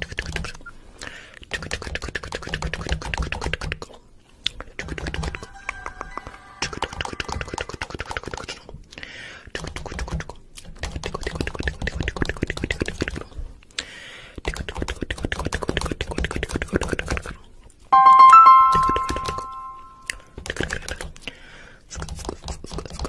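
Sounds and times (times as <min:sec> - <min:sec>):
ringing chime-like tone: 0:18.0 - 0:20.1.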